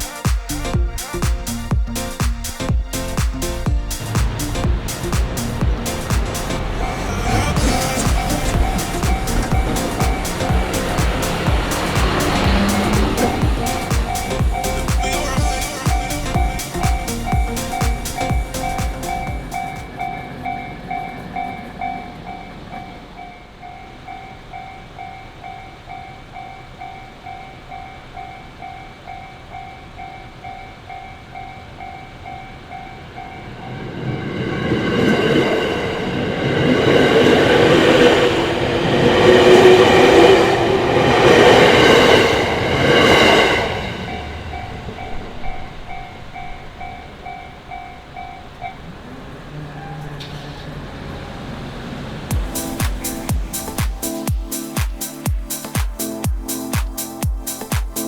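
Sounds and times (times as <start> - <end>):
electric train rumbling past: 0.0 - 58.0
level crossing bell ringing: 3.6 - 22.6.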